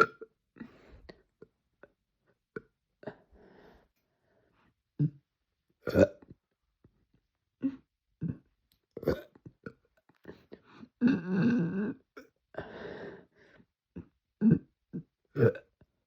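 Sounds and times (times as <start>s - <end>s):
woman burping: 0.0s - 0.3s, 5.8s - 6.3s, 7.7s - 9.8s, 11.0s - 12.3s, 14.0s - 15.8s
short throat sounds: 0.0s - 0.7s.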